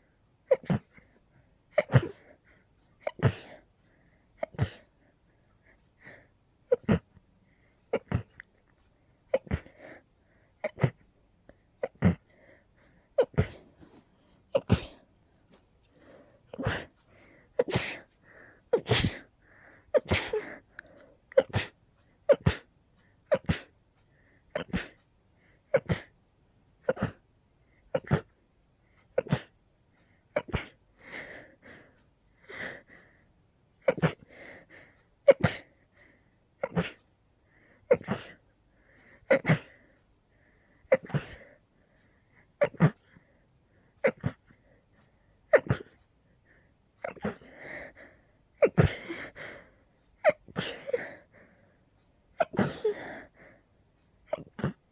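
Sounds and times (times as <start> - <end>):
person sneezing: 1.8 - 2.3, 13.2 - 15.0, 16.5 - 16.9, 17.6 - 18.1, 18.7 - 19.3, 20.0 - 20.6, 52.4 - 53.2.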